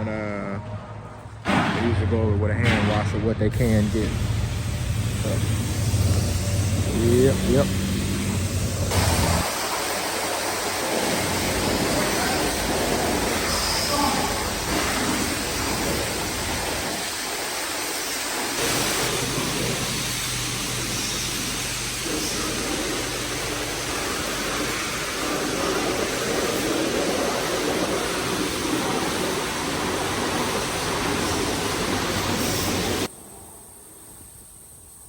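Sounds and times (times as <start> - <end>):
low steady hum: 0.0 - 9.4
water spraying onto truck: 3.6 - 33.1.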